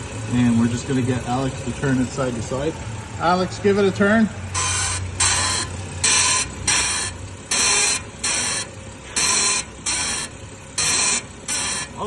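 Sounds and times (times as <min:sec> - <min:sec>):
ball joint creaking: 0:04.5 - 0:12.0.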